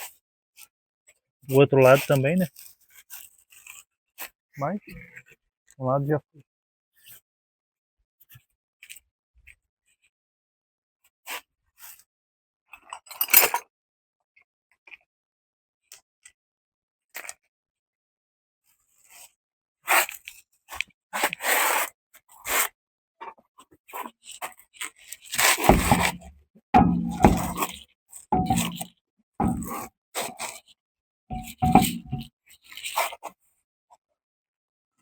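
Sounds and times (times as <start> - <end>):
hand tools clinking on metal: 28.4 - 28.8.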